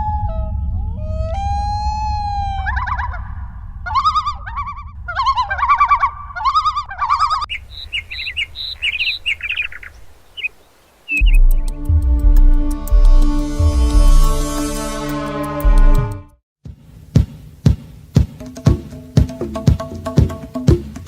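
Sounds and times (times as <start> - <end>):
steady low rumble: 0.0 - 6.4, 11.2 - 14.7
bird calls and chirps: 5.2 - 11.8
music: 11.2 - 21.0.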